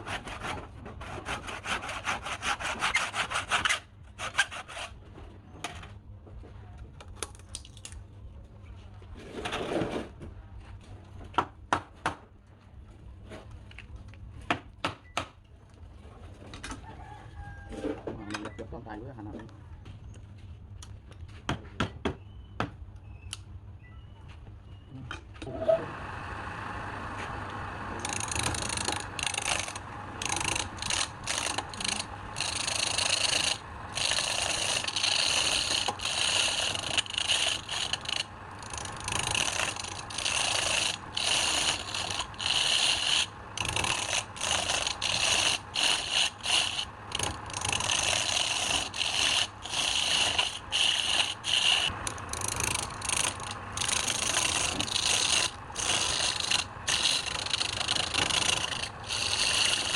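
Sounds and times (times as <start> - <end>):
tool scraping wood on lathe: 0.0 - 5.0, 28.0 - 59.9.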